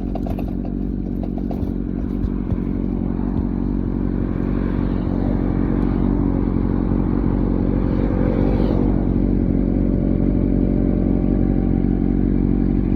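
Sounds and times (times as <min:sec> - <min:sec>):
motorcycle engine running: 0:00.0 - 0:12.9.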